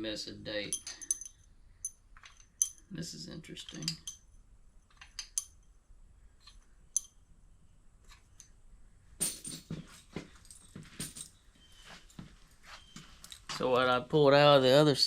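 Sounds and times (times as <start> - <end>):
metallic clicks of engine parts: 0.7 - 2.9, 3.6 - 5.8, 6.4 - 7.2
clattering and rustling: 9.2 - 13.6.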